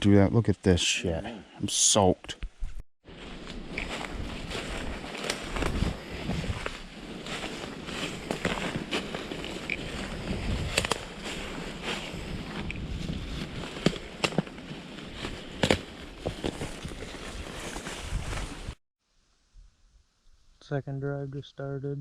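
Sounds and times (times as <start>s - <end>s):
branches swishing against clothing: 3.1s - 18.8s
footsteps in wet brush: 3.1s - 18.8s
twigs snapping: 5.1s - 5.8s, 10.6s - 11.3s, 13.6s - 17.0s.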